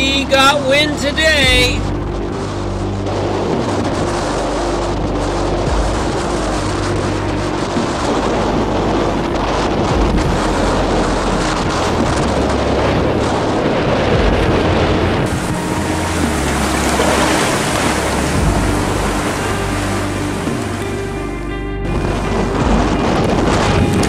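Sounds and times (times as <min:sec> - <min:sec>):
low steady hum: 0:00.0 - 0:24.0
sea rushing past hull: 0:00.0 - 0:24.0
wind buffeting microphone: 0:00.0 - 0:24.0.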